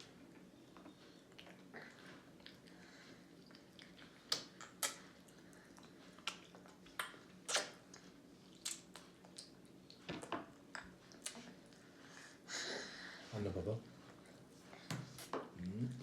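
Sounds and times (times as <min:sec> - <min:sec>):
babies' lips smacking while chewing: 0:03.4 - 0:11.8.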